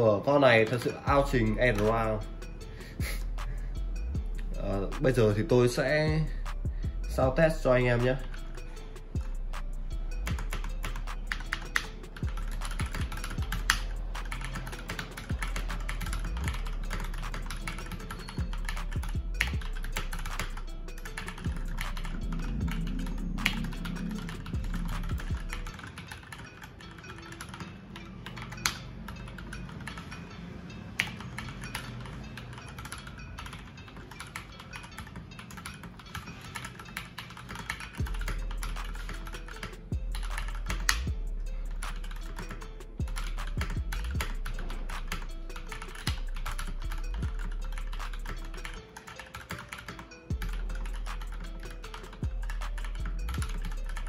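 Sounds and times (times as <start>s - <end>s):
background music: 0.0s - 54.0s
mechanical keyboard typing: 10.3s - 41.0s, 43.5s - 50.3s, 52.0s - 54.0s.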